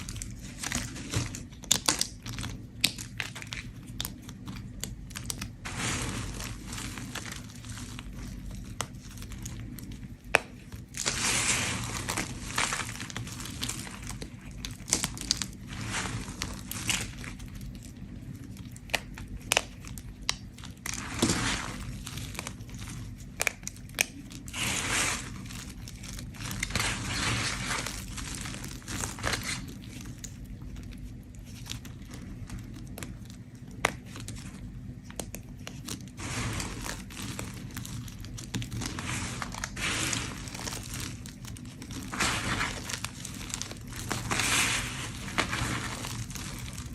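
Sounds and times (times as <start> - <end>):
steady low hum: 0.0 - 46.9.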